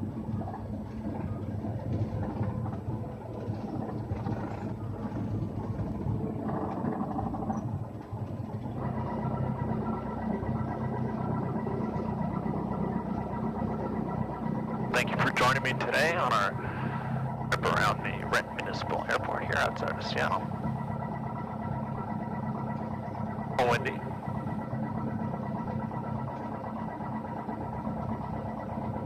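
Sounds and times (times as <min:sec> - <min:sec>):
aircraft piston engine running: 0:00.0 - 0:29.0
steady higher-pitched tone: 0:08.7 - 0:29.0.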